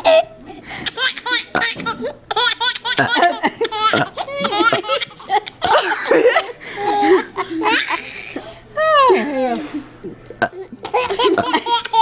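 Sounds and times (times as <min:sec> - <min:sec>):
person laughing hard: 0:02.9 - 0:07.8.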